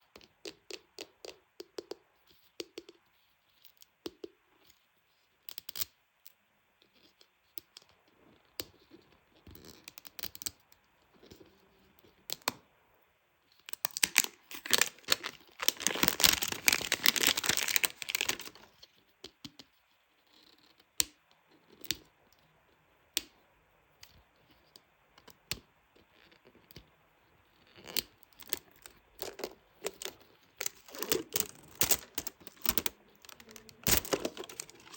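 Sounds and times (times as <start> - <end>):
packaging crinkling and tearing: 13.7 - 18.8, 28.4 - 34.9
packaging clicks and taps: 13.7 - 19.4, 28.4 - 34.9.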